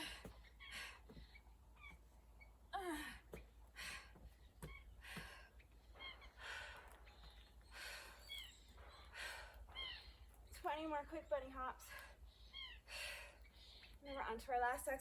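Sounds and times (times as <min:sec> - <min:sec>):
woman breathing hard: 0:00.0 - 0:01.6, 0:02.8 - 0:10.5, 0:11.8 - 0:14.0
bird chirps: 0:04.3 - 0:14.3.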